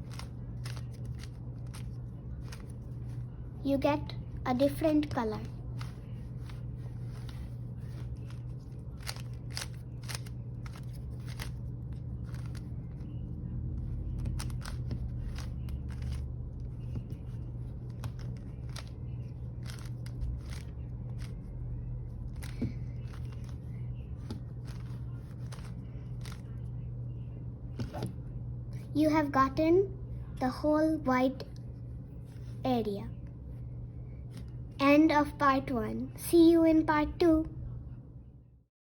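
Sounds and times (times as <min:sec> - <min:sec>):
steady low hum: 0:00.0 - 0:38.7
puzzle cube clicks and scrapes: 0:05.8 - 0:13.0, 0:14.1 - 0:21.4, 0:22.3 - 0:23.6, 0:24.2 - 0:26.6.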